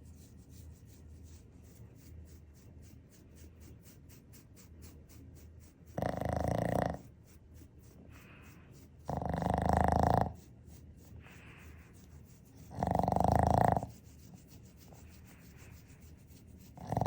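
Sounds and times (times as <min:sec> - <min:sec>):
dog snoring: 0:05.9 - 0:07.1, 0:09.0 - 0:10.4, 0:12.6 - 0:14.0, 0:16.8 - 0:17.0
faint breaths: 0:08.0 - 0:09.1, 0:11.1 - 0:12.7, 0:14.8 - 0:16.4.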